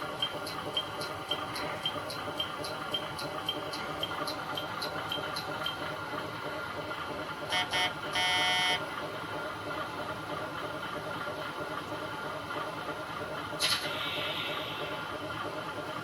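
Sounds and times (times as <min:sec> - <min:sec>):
rail-joint clatter: 0:00.0 - 0:06.9
steady running hum: 0:00.0 - 0:16.0
train horn blasts: 0:07.5 - 0:08.8.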